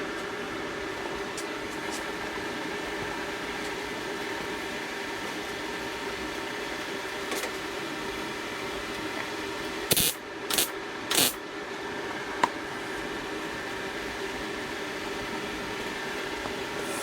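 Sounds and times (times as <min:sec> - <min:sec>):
steady background hum: 0:00.0 - 0:04.6, 0:08.6 - 0:17.0
welder crackling bursts: 0:09.9 - 0:11.4.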